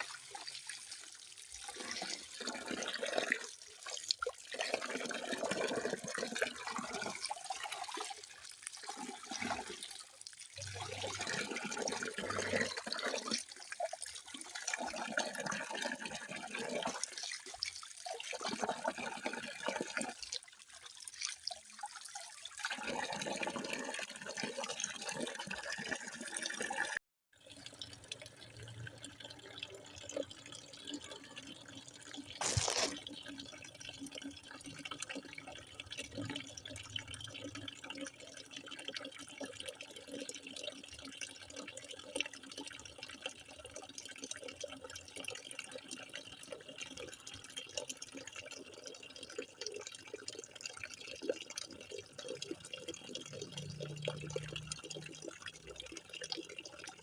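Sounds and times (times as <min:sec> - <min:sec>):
water running and trickling: 0:00.0 - 0:57.0
water splash: 0:32.4 - 0:33.0.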